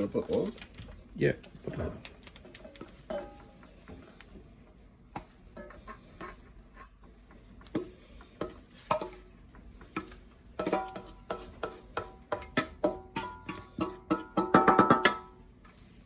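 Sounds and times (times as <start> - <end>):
spoon scraping and knocking in pot: 2.6 - 4.2, 5.1 - 15.4.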